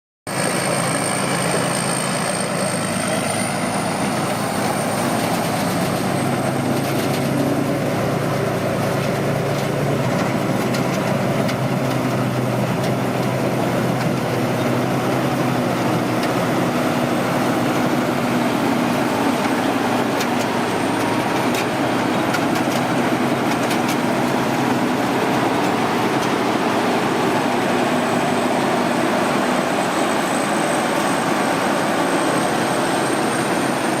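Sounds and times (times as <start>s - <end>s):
combine harvester engine running: 0.3s - 34.0s.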